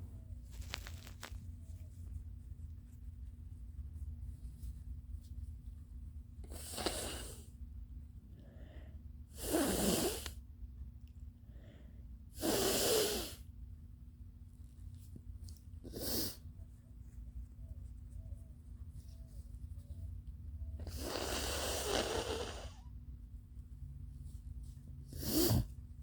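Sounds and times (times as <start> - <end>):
person blowing nose: 6.5 - 7.5, 9.3 - 10.4, 12.4 - 13.4, 15.9 - 16.4, 20.8 - 22.9, 25.1 - 25.7.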